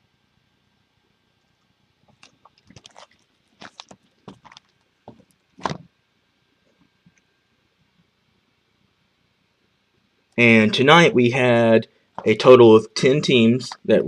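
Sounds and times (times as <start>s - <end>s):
clicks and crinkly rustles: 2.0s - 5.9s.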